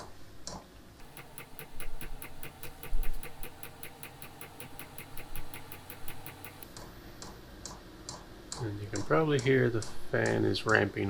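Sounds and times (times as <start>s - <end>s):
combustion fan hum: 1.0s - 6.6s
fuel pump ticking: 1.0s - 6.6s.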